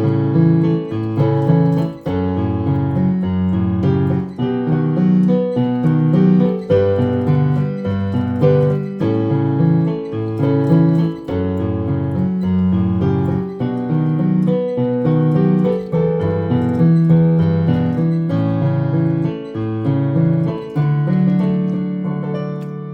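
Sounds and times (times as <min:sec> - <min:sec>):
electronic keyboard piano hymn: 0:00.0 - 0:22.9.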